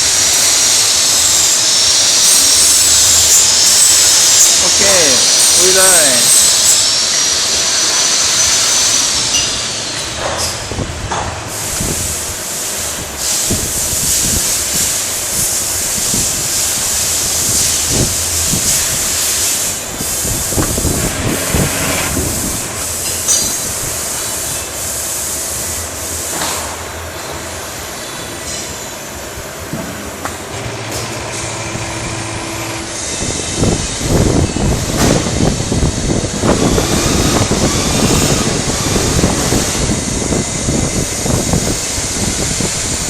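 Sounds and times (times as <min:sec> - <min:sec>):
hissing air: 0:00.0 - 0:09.4, 0:11.5 - 0:26.4, 0:30.2 - 0:43.0
faint whine sweeping up and down: 0:19.7 - 0:23.5.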